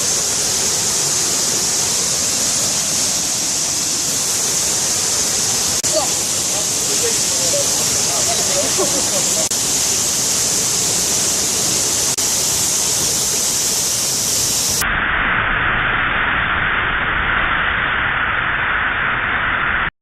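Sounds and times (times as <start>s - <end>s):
waterfall rushing: 0.0s - 14.8s.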